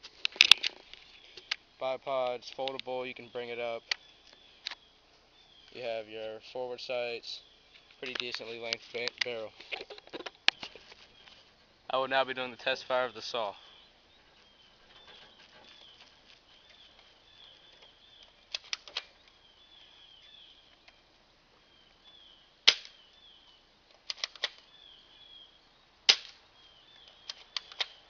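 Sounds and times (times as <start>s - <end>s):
airsoft gun shots snapping: 22.7s - 23.0s, 26.1s - 26.4s.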